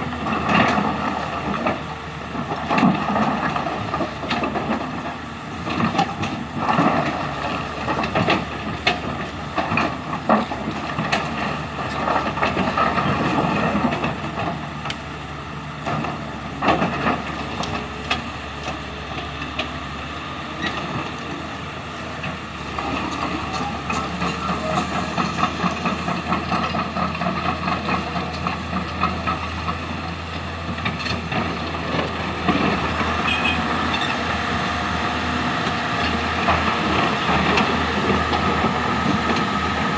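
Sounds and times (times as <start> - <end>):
diesel engines running: 0.0 - 39.9.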